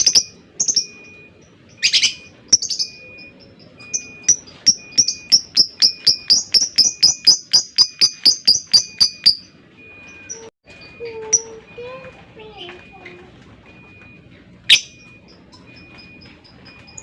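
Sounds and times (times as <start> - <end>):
lovebird chirping: 0.0 - 10.5, 14.6 - 17.0.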